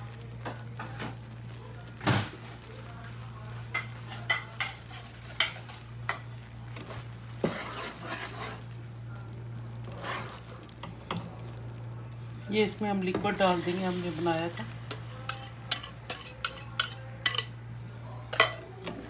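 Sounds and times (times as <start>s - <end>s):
utensil scraping a pan: 6.9s - 8.8s, 9.8s - 10.7s, 13.2s - 17.6s, 18.3s - 18.7s.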